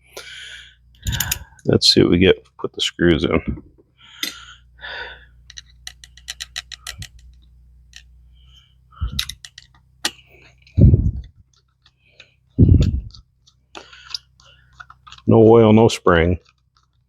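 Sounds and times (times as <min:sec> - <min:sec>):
small metal clicks and ticks: 0:00.9 - 0:01.7, 0:05.4 - 0:08.1, 0:09.0 - 0:10.8, 0:11.4 - 0:15.3, 0:16.1 - 0:17.0.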